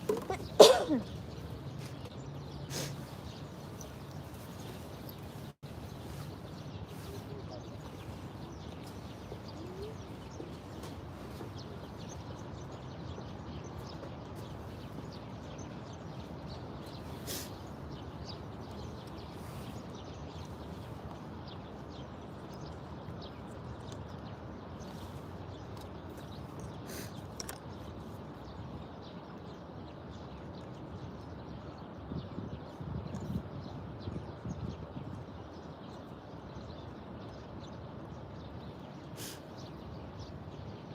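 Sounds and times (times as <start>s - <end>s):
faint bird chirps: 0.0s - 21.0s.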